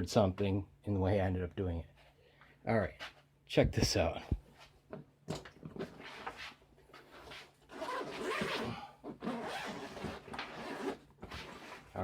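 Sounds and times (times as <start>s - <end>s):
zipper rasping: 7.2s - 12.0s.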